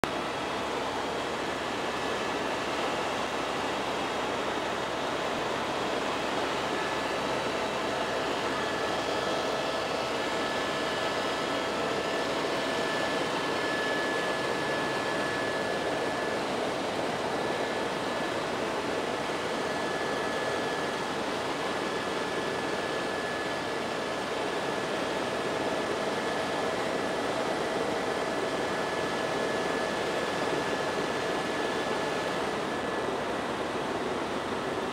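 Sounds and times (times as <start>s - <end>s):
helicopter engine and rotor noise: 0.0s - 34.9s.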